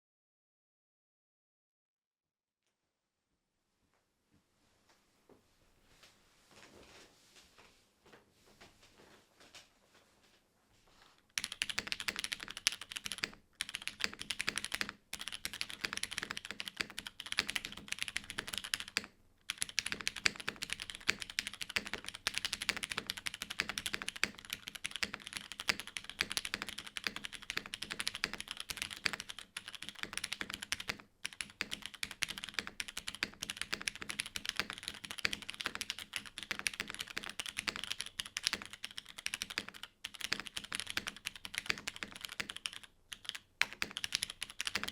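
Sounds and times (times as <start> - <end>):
fast mechanical keyboard typing: 11.3 - 44.9.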